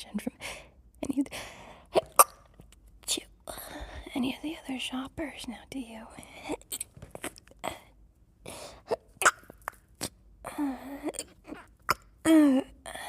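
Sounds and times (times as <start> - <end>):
woman gasping: 0.4 - 2.1, 7.6 - 9.0, 10.4 - 11.7.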